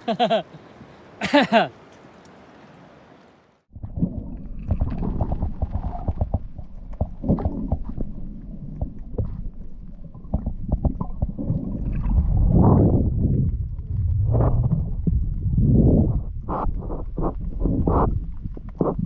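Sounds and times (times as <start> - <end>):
muffled underwater rumble: 3.8 - 19.0
underwater knocks and crackles: 3.8 - 19.0.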